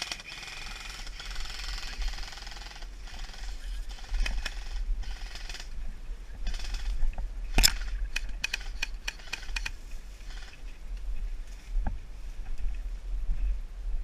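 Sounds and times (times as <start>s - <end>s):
rustling movement: 6.4s - 13.6s
airsoft gun clicks: 7.5s - 9.8s
airsoft gun crack: 7.5s - 9.8s.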